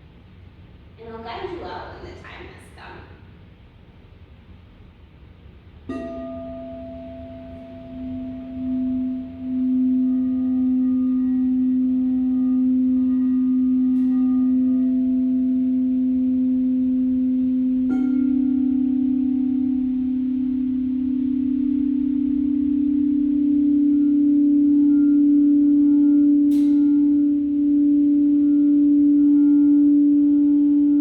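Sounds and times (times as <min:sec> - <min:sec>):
singing bowl humming: 0:05.8 - 0:31.0
second singing bowl struck: 0:05.9 - 0:15.9, 0:26.4 - 0:27.4.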